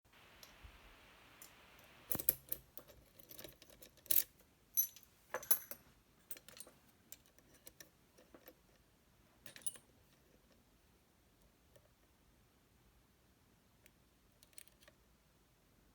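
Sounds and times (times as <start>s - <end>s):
metal lock parts clicking: 1.4s - 8.6s.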